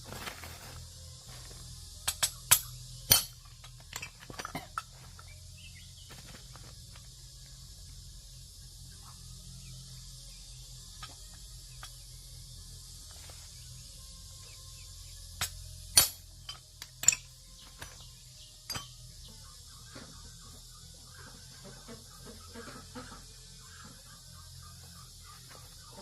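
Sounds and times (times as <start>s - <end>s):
metallic clinks of tools: 2.0s - 5.3s, 15.4s - 17.4s, 18.6s - 19.0s.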